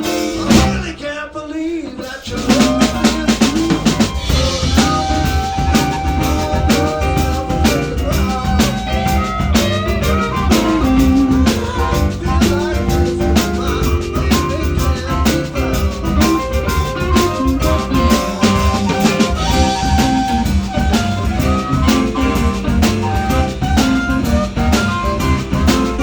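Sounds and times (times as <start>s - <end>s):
bending guitar lines: 0.0s - 1.1s, 2.0s - 26.0s
drum kit beat: 0.0s - 1.1s, 2.0s - 26.0s
blues band playing: 0.0s - 1.2s, 2.0s - 26.0s.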